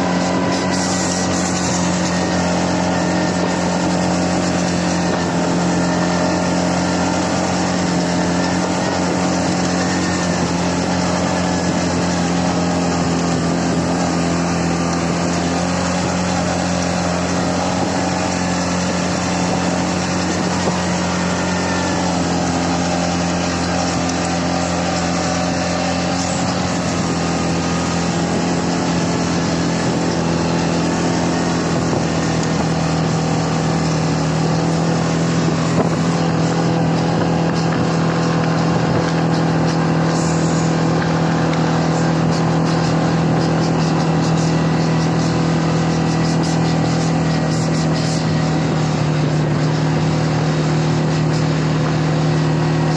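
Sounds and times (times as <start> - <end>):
atv engine running: 0.0 - 52.9.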